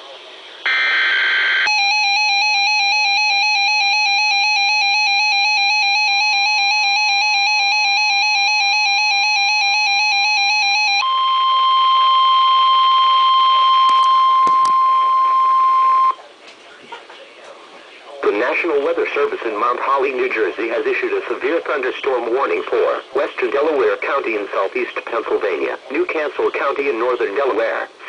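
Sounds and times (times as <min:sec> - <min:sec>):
electronic alarm warble: 0:00.7 - 0:16.2
steady warning tone: 0:00.7 - 0:16.2.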